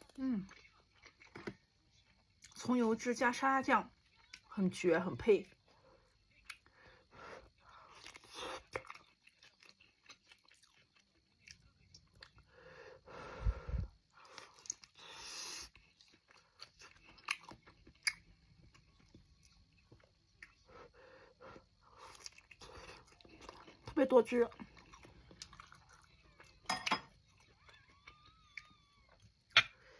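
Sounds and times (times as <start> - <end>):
person chewing and biting: 7.9 - 12.4, 14.2 - 20.6, 22.0 - 23.9, 24.6 - 26.6.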